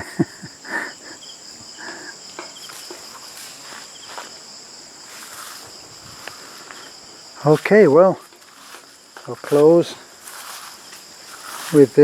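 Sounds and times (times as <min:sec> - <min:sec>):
crickets chirring: 0:00.0 - 0:12.0.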